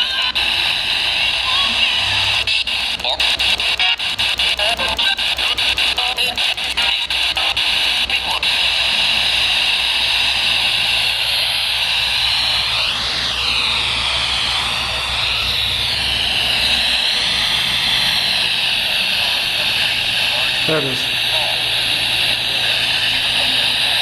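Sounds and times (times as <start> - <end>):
radio static hiss: 0.0 - 24.0
radio whistle: 0.0 - 24.0
low hum: 9.7 - 24.0.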